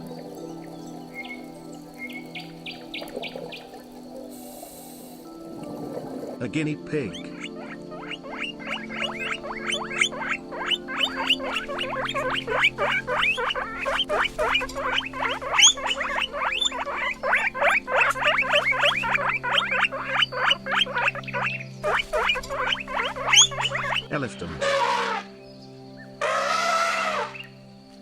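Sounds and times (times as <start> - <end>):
background music: 0.0 - 28.0
guinea pig squeaking: 7.2 - 24.1.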